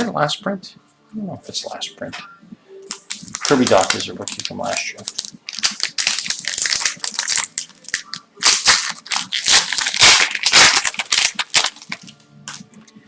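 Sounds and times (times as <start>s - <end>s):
plastic wrapper crinkling and tearing: 2.9s - 12.6s.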